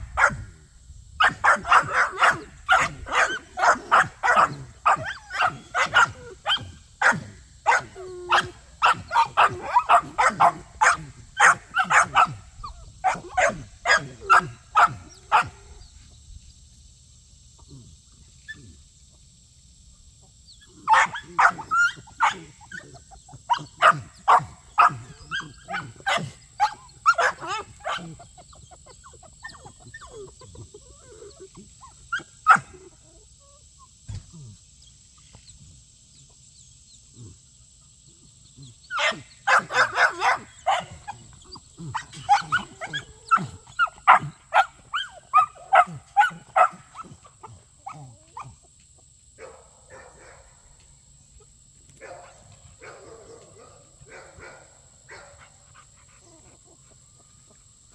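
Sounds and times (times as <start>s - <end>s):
dogs barking: 0.0s - 0.6s, 1.2s - 15.8s, 20.7s - 32.9s, 38.7s - 48.6s, 49.4s - 50.8s, 52.0s - 57.6s.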